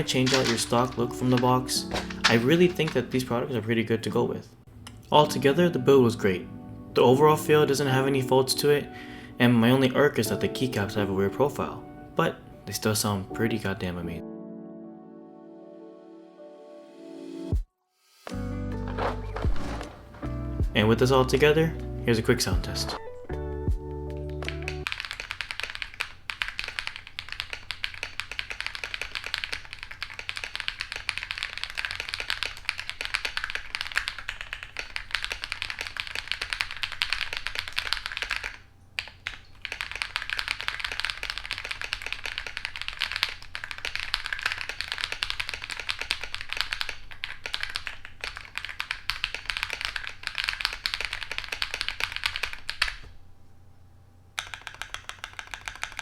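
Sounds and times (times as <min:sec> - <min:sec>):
mechanical keyboard typing: 0:00.0 - 0:03.4, 0:24.2 - 0:53.2, 0:54.4 - 0:56.0.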